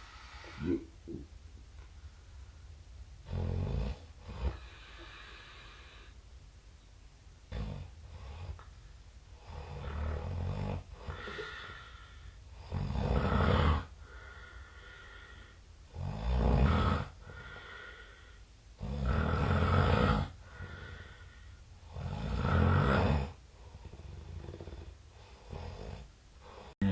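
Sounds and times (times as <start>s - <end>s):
loud snoring: 3.2s - 4.8s, 7.5s - 8.6s, 9.4s - 11.6s, 12.6s - 13.9s, 15.9s - 17.5s, 18.8s - 21.1s, 21.9s - 26.9s.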